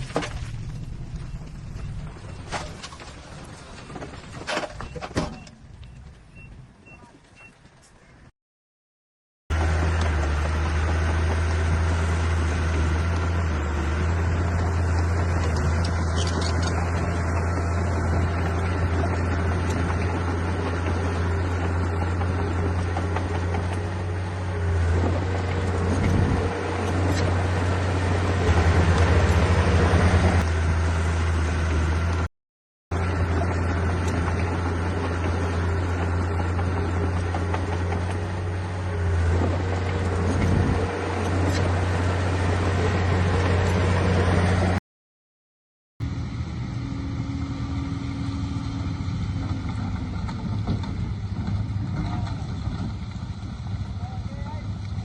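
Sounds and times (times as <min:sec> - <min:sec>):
heavy diesel engine humming: 0:09.5 - 0:32.3, 0:32.9 - 0:44.8, 0:46.0 - 0:55.0.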